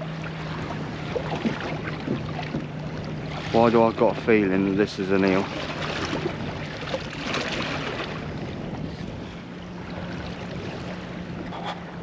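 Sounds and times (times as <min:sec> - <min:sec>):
sea water washing around boat: 0:00.0 - 0:12.0
wind on microphone: 0:07.2 - 0:12.0.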